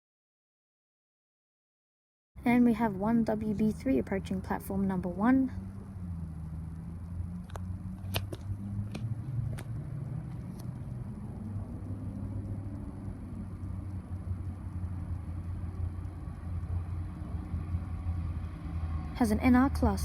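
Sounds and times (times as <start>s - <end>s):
sharp clicks: 7.4s - 11.6s.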